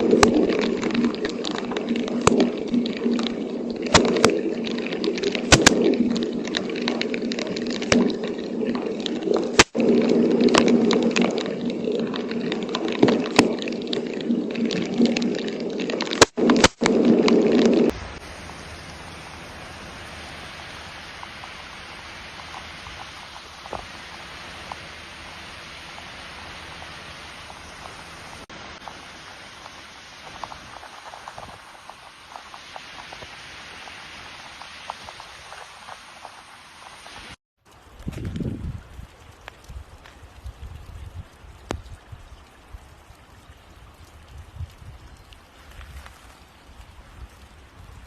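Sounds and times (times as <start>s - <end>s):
rushing floodwater: 0.0s - 16.1s, 17.9s - 38.0s
rain and running water: 0.0s - 48.0s.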